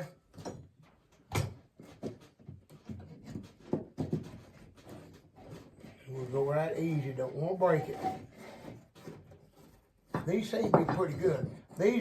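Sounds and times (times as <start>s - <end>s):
wooden boards knocking: 0.3s - 5.8s, 10.1s - 12.0s.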